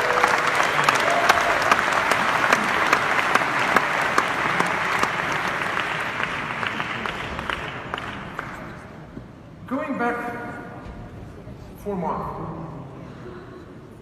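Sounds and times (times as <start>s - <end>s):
audience applauding: 0.0s - 8.8s.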